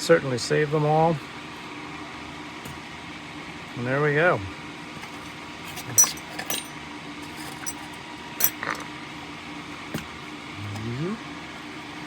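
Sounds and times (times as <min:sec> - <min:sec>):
small metal parts clinking: 0:05.7 - 0:08.8.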